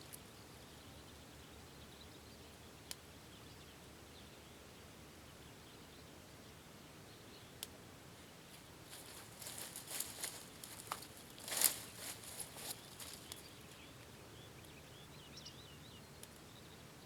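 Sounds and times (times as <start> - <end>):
light high ticks: 2.8 - 3.1, 8.6 - 14.8, 16.2 - 16.5.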